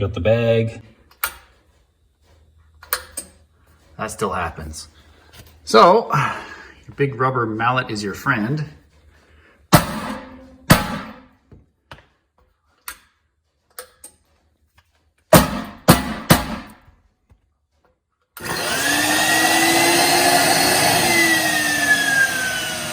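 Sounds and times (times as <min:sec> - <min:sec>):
rubber mallet knocking on metal: 0:15.3 - 0:16.7
vacuum motor whine: 0:18.4 - 0:22.9.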